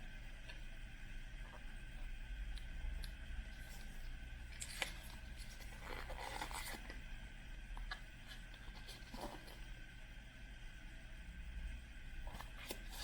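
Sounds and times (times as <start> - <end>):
plastic crinkling: 3.5 - 7.0
plastic packaging clicks and scrapes: 4.5 - 7.0.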